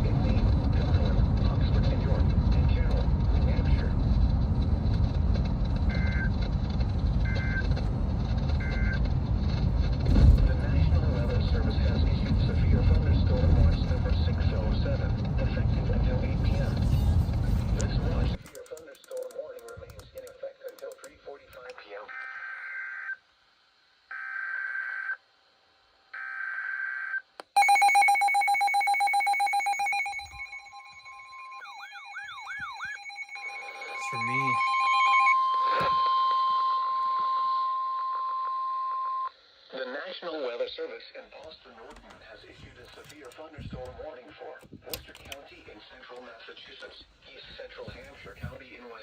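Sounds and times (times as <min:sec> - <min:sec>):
two-tone digital data bursts: 0:27.6 - 0:39.3.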